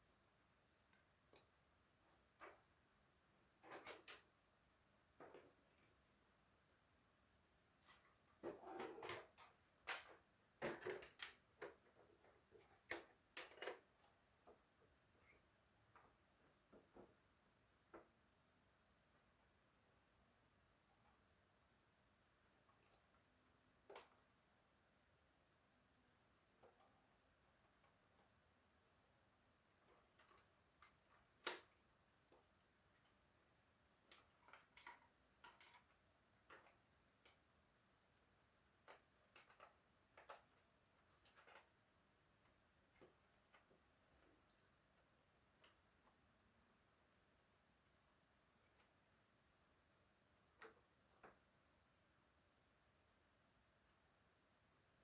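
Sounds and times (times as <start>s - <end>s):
small hard parts clicking: 34.1s - 37.4s.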